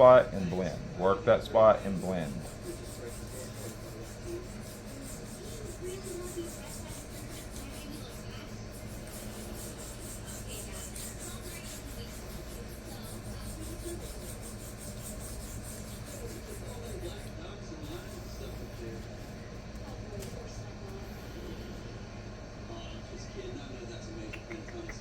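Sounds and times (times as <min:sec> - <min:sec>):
knife scraping on sharpening stone: 0:02.2 - 0:17.0.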